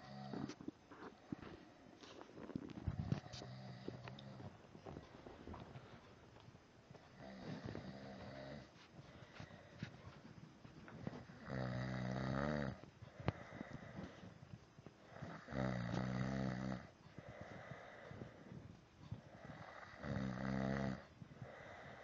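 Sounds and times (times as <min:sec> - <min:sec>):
person snoring: 0:00.0 - 0:00.6, 0:02.4 - 0:04.5, 0:07.2 - 0:08.7, 0:11.2 - 0:14.3, 0:15.0 - 0:18.6, 0:19.3 - 0:22.0
quiet breathing: 0:00.0 - 0:22.0.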